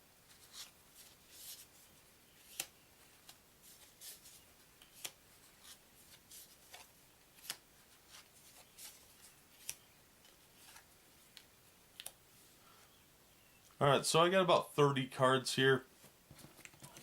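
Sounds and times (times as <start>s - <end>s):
paper cards flicking and swishing: 0.3s - 9.9s.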